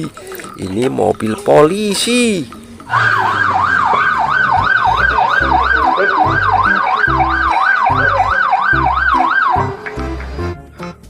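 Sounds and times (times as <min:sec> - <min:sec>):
police siren yelping: 0:02.9 - 0:10.2.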